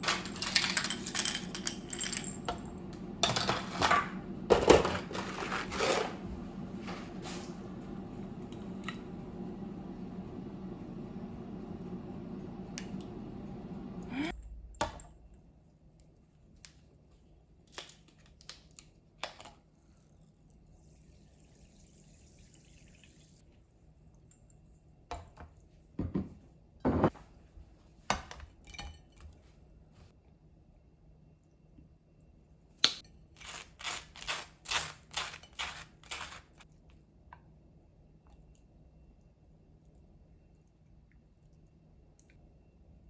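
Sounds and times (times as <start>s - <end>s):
dishes and utensils clinking: 0.0s - 6.2s
steady running hum: 0.0s - 14.8s.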